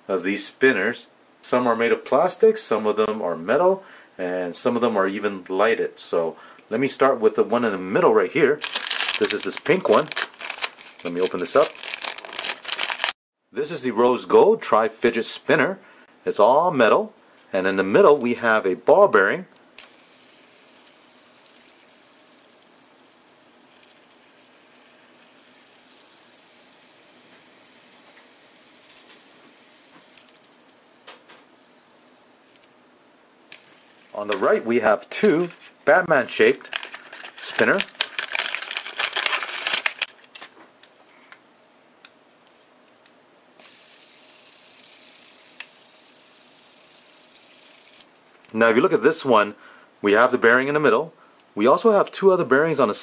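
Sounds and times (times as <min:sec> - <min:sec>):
plastic packaging crinkling: 0:08.6 - 0:13.2, 0:34.2 - 0:35.8, 0:36.4 - 0:40.6
fidget spinner whirring: 0:19.8 - 0:32.7, 0:33.5 - 0:35.7, 0:43.6 - 0:48.1.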